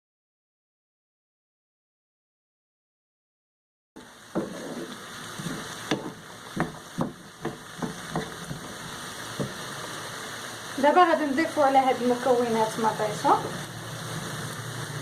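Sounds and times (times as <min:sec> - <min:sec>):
onions and peas sizzling in oil: 0:04.0 - 0:15.0
utensil knocking against pan: 0:04.4 - 0:09.6.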